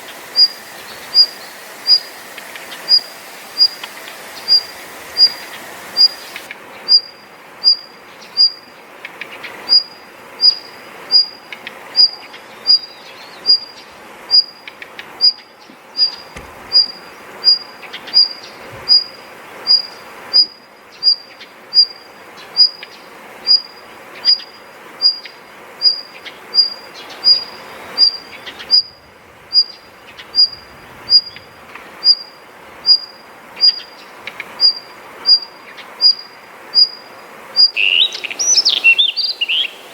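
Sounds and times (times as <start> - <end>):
faint chirps of other birds: 0.0 - 39.9
songbird repeating high note: 37.6 - 39.9.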